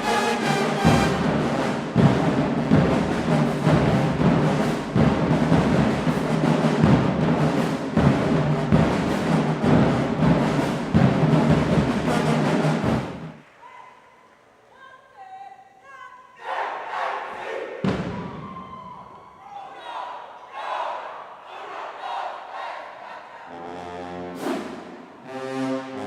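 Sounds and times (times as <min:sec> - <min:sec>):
marching band playing: 0:00.0 - 0:13.4, 0:23.5 - 0:26.0
heavy drum hits: 0:00.8 - 0:13.4, 0:17.8 - 0:18.6.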